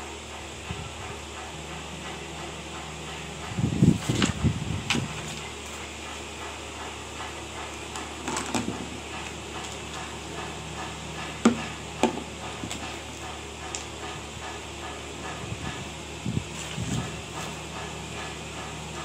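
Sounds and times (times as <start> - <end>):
steady low hum: 0.0 - 19.0
hard objects knocking: 8.2 - 9.0, 11.4 - 13.0.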